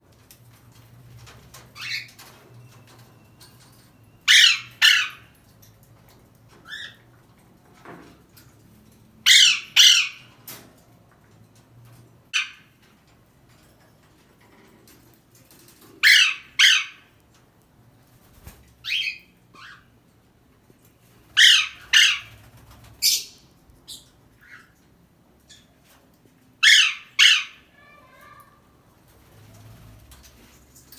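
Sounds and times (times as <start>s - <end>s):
parrot squawking: 4.3s - 5.3s, 9.3s - 10.3s, 12.4s - 12.7s, 16.0s - 17.1s, 18.8s - 19.9s, 21.4s - 22.4s, 23.0s - 24.7s, 26.6s - 28.5s
parrot soft chirps: 23.0s - 24.8s.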